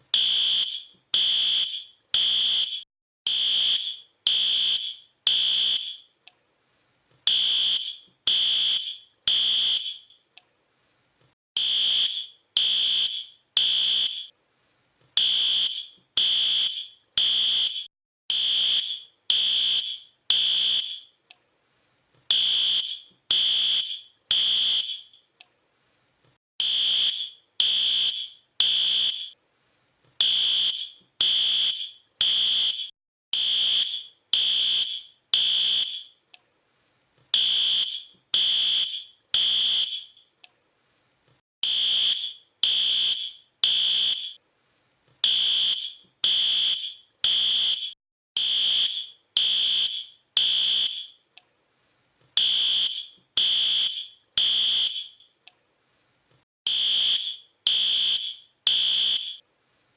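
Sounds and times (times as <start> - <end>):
fire alarm high-pitched beeps: 0.2 - 6.1, 7.3 - 10.2, 11.6 - 14.3, 15.2 - 21.1, 22.3 - 25.2, 26.6 - 29.4, 30.2 - 36.2, 37.4 - 40.2, 41.6 - 44.4, 45.2 - 51.2, 52.4 - 55.2, 56.7 - 59.4.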